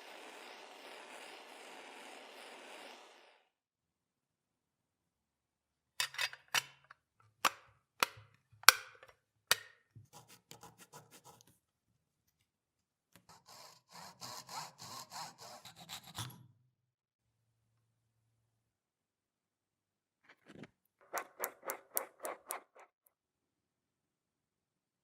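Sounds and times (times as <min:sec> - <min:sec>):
abrasive rubbing strokes: 0:20.3 - 0:22.9.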